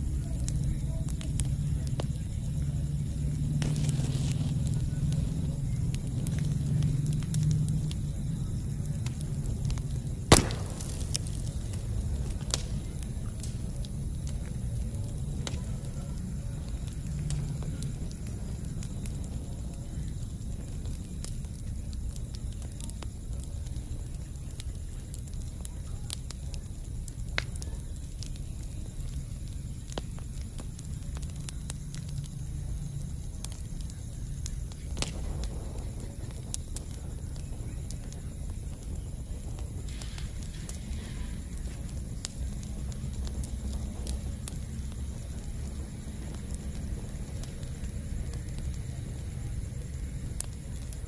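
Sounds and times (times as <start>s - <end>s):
campfire flames: 0.0s - 51.0s
fire crackles: 0.0s - 51.0s
loud sharp pop: 10.3s - 11.3s.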